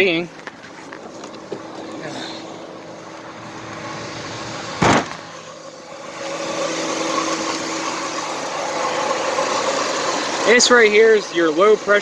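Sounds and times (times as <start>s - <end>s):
car engine idling: 0.0s - 12.0s
loud thump: 4.6s - 5.4s.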